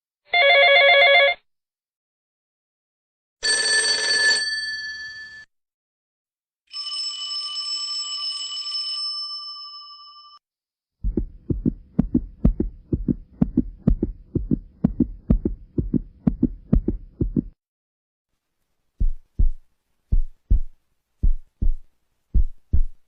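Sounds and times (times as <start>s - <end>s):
heartbeat thumping: 11.0s - 17.6s, 19.0s - 23.0s.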